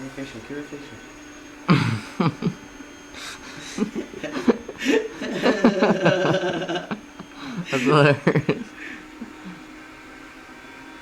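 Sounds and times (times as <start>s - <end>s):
people laughing: 1.7s - 9.7s.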